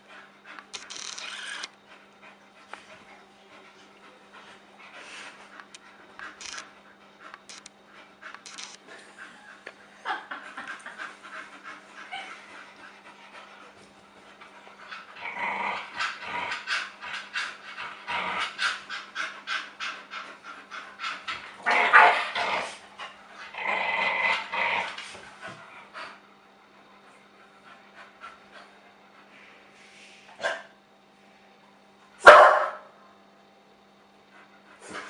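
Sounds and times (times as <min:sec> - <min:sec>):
dogs panting: 0:01.6 - 0:21.6, 0:24.5 - 0:29.4, 0:34.2 - 0:35.0
dog growling: 0:14.8 - 0:19.9, 0:20.9 - 0:25.1.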